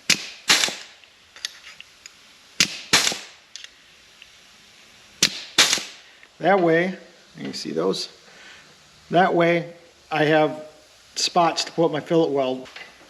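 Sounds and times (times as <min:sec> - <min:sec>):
punch tool snapping through sheet steel: 0:00.0 - 0:01.0, 0:02.6 - 0:03.4, 0:05.2 - 0:06.0.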